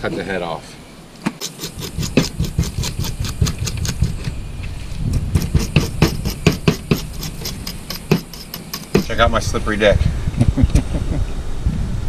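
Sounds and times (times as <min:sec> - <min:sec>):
knife crunching through fish bone: 0:01.4 - 0:04.4, 0:05.2 - 0:09.1.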